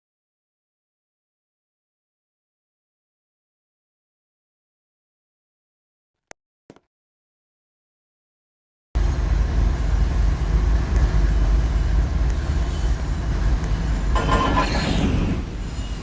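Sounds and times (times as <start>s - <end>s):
train rumbling past: 9.0s - 16.0s.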